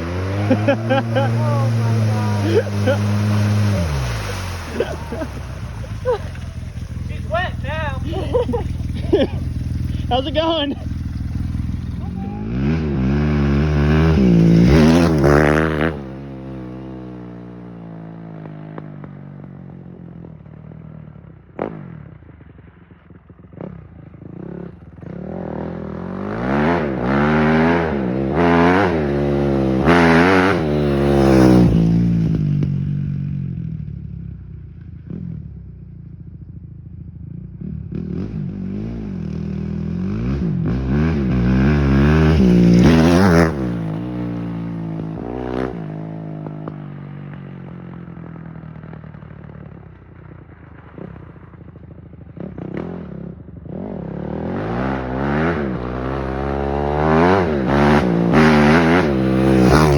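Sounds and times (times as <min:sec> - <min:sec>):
vehicle engine revving: 0:00.0 - 0:17.4, 0:24.4 - 0:32.7, 0:37.9 - 0:45.9, 0:52.4 - 0:59.9.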